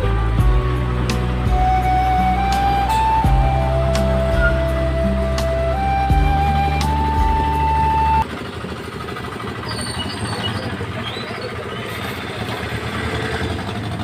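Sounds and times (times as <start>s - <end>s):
flute music: 0.0s - 8.3s.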